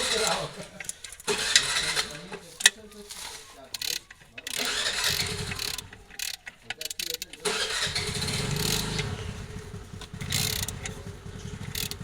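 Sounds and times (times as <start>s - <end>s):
vehicle engine running: 4.7s - 6.2s, 7.4s - 12.0s.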